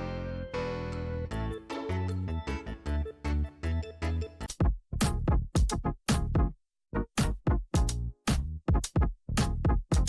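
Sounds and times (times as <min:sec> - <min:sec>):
electronic music with drum-machine beat: 0:03.7 - 0:06.5, 0:07.2 - 0:10.0.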